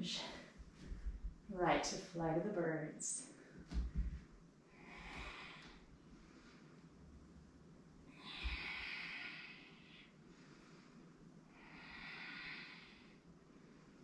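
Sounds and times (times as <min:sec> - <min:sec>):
low thump: 0:03.7 - 0:04.3
person breathing: 0:04.7 - 0:07.0, 0:08.1 - 0:14.0.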